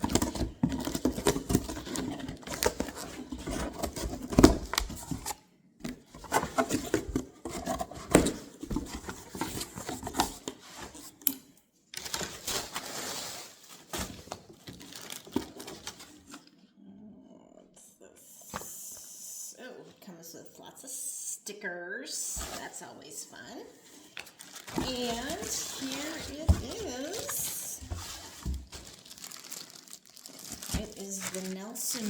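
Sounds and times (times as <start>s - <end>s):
packaging rustling: 0.0s - 11.1s, 12.0s - 16.4s, 23.9s - 32.0s
cardboard knocks and scrapes: 24.6s - 29.0s.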